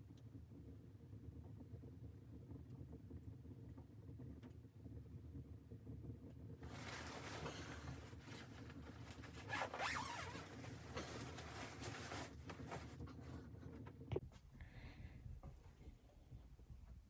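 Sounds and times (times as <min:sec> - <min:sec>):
zipper rasping: 0:06.6 - 0:13.5.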